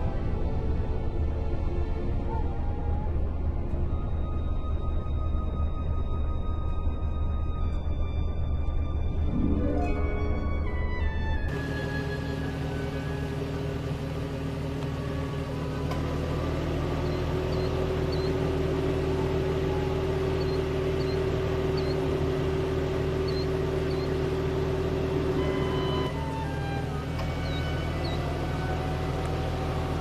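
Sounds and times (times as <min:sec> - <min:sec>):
droning motor hum: 0:00.0 - 0:30.0
faint high chirps: 0:16.9 - 0:24.4.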